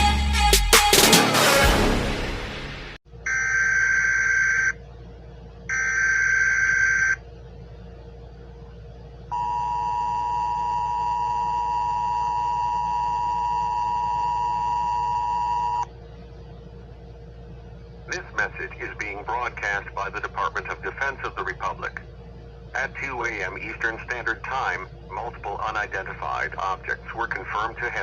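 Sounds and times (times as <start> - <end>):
faint steady hum: 3.0 - 28.0
data tone bursts: 5.7 - 7.2, 9.3 - 15.9.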